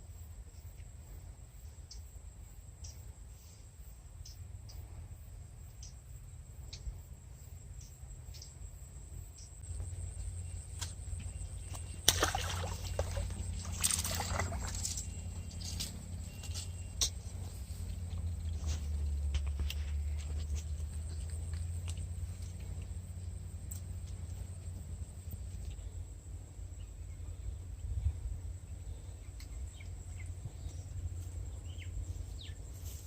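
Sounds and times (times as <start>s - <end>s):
faint ticks: 6.6s - 7.0s
wind rumble on microphone: 26.7s - 32.6s.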